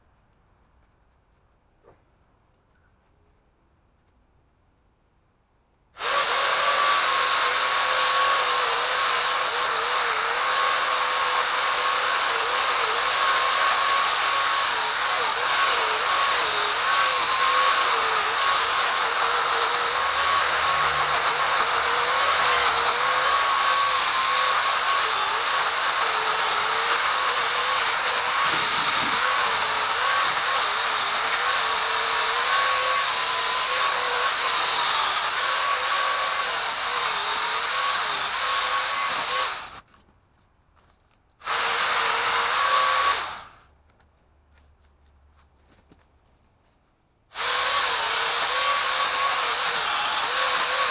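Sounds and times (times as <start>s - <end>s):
pole saw motor whining: 6.0s - 39.8s, 41.4s - 43.6s, 47.4s - 50.9s.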